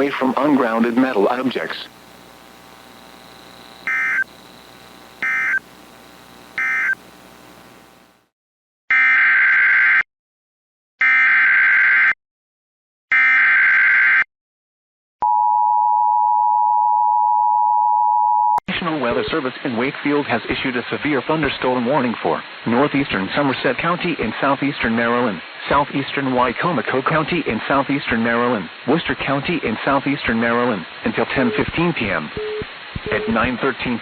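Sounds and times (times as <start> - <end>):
warbling data bursts: 0.0 - 7.9
faint hum: 0.0 - 8.2
data chirps: 3.8 - 4.4, 5.2 - 5.7, 6.6 - 7.0.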